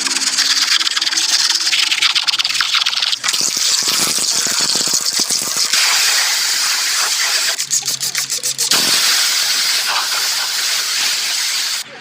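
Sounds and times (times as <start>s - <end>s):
pressure washer spray hissing: 3.8s - 11.8s.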